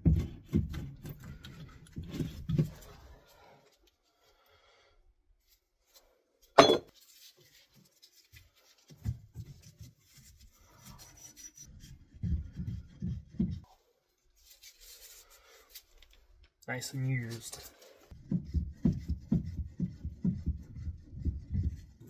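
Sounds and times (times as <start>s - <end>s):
scraping and rubbing on pipe: 9.8s - 16.3s.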